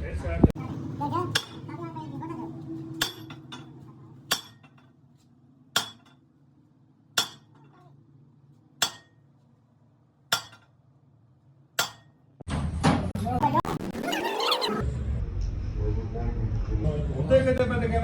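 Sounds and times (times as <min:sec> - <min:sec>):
hammer striking steel: 0:01.3 - 0:01.8, 0:02.9 - 0:04.9, 0:05.8 - 0:06.2, 0:07.2 - 0:07.8, 0:08.8 - 0:09.2, 0:10.3 - 0:10.8, 0:11.8 - 0:12.2.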